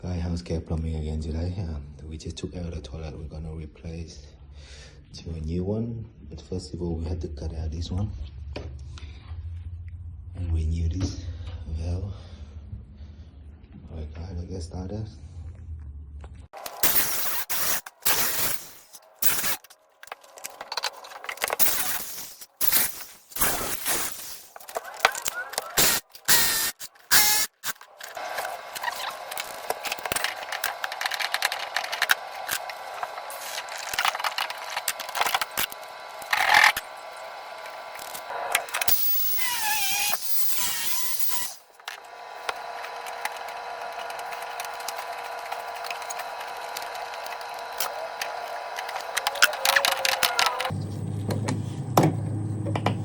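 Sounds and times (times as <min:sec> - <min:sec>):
steady mechanical whir: 0:16.5 - 0:53.0.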